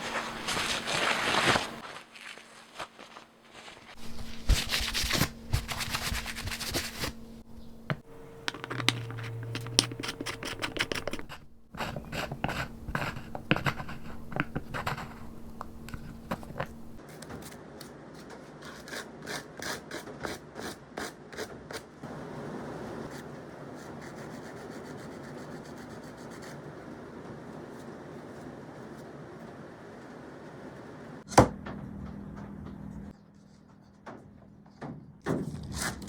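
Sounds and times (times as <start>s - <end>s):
scraping and rubbing: 0.0s - 17.1s.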